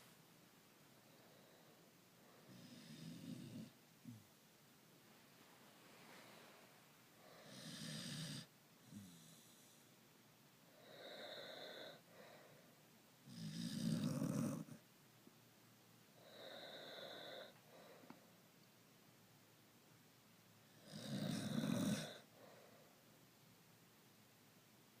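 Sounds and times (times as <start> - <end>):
dog snoring: 2.4 - 4.2, 7.3 - 9.8, 10.7 - 12.0, 13.2 - 14.8, 16.2 - 17.6, 20.6 - 22.4
person snoring: 7.3 - 9.6, 13.3 - 14.8, 20.8 - 22.3
whistling snores: 7.4 - 9.5, 13.3 - 14.7, 20.8 - 22.2.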